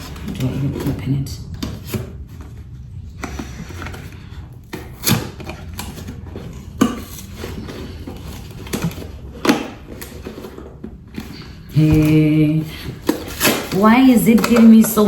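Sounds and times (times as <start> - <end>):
packaging rubbing and scraping: 3.1 - 12.2, 12.8 - 15.0.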